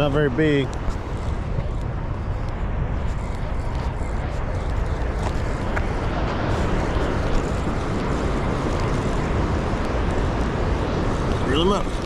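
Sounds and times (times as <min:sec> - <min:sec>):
water rushing below dam: 0:05.3 - 0:12.0.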